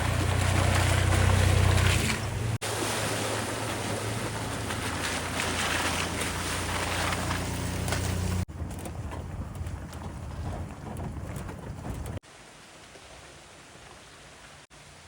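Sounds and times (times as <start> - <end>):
truck engine humming: 0.0 - 10.0.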